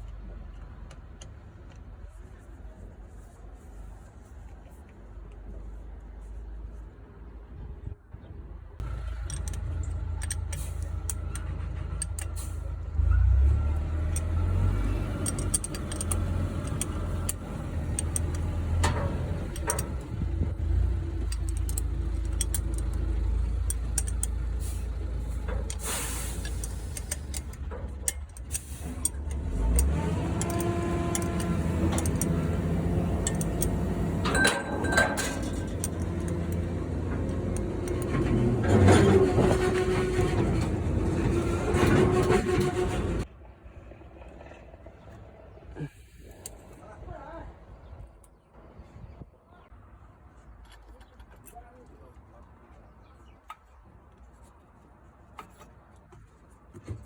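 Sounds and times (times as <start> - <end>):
diesel truck engine rumbling: 7.2 - 49.7
sharp clicks and knocks: 8.8 - 12.6, 14.0 - 24.4, 25.3 - 43.3.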